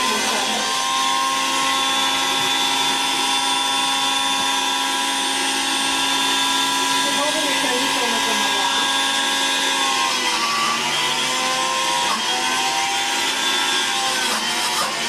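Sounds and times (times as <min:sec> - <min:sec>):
blender motor whining: 0:00.0 - 0:15.0.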